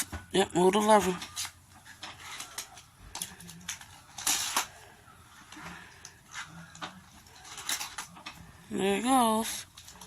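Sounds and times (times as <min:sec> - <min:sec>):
toy cars rattling: 0:01.2 - 0:04.8, 0:06.7 - 0:08.4.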